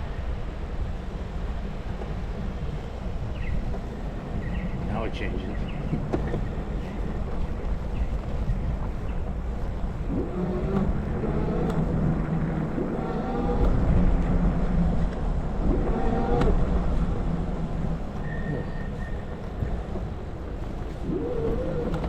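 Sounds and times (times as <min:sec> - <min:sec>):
wind buffeting microphone: 0:00.0 - 0:22.0
pitched motor hum: 0:02.6 - 0:14.0, 0:17.7 - 0:22.0.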